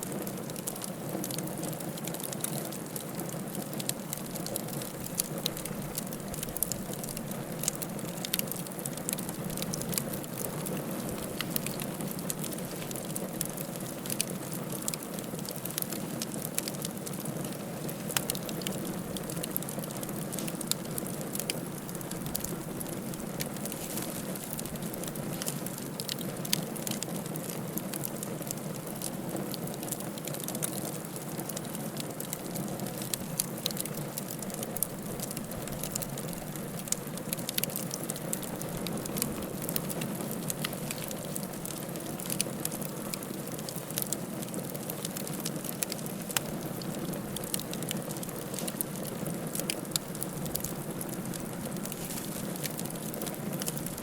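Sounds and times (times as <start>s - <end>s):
fire crackling in fireplace: 0.0s - 54.0s
rush of flames: 47.3s - 54.0s.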